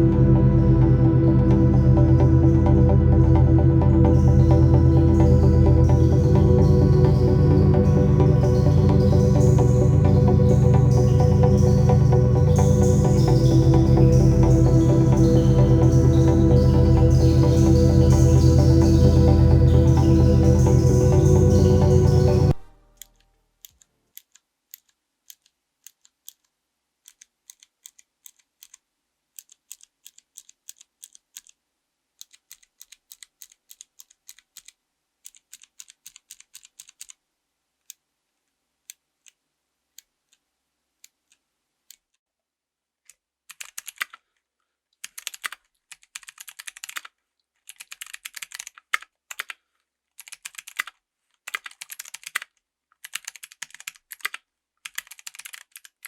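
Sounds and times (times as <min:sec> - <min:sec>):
mechanical keyboard typing: 0:29.4 - 0:31.6, 0:32.2 - 0:37.2, 0:43.5 - 0:44.2, 0:45.0 - 0:47.1, 0:47.7 - 0:49.6, 0:50.2 - 0:56.0.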